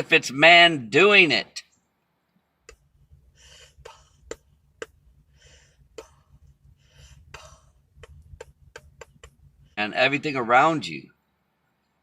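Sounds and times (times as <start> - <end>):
low steady hum: 1.6 - 12.0
soft breathing: 2.7 - 9.8.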